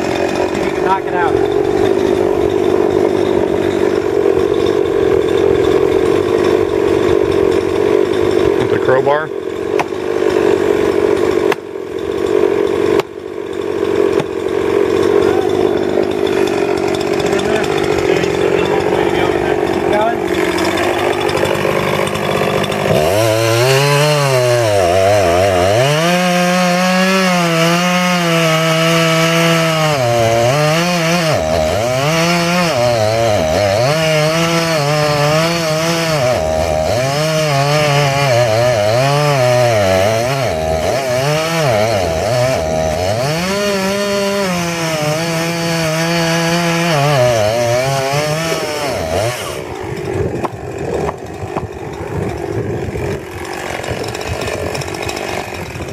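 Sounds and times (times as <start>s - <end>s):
chainsaw cutting wood: 0.0s - 55.9s.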